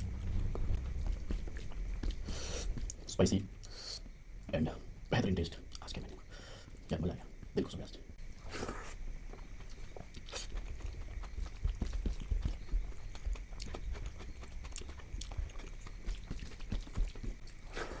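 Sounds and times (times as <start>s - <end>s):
soft low thumps: 0.0s - 3.6s, 9.6s - 17.5s
person chewing food: 0.0s - 3.8s, 8.4s - 18.0s.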